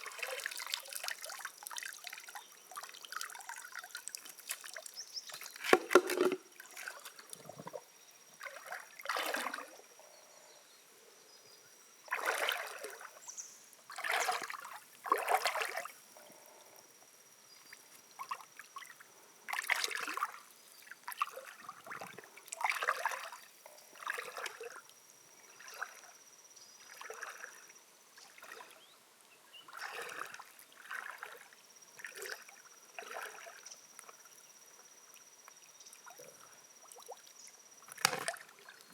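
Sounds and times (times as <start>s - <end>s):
water sloshing and splashing: 0.0s - 9.9s, 12.1s - 13.3s, 13.9s - 16.0s, 18.2s - 20.4s, 21.0s - 24.9s, 26.8s - 27.6s, 28.3s - 28.8s, 29.7s - 34.2s, 37.9s - 38.9s.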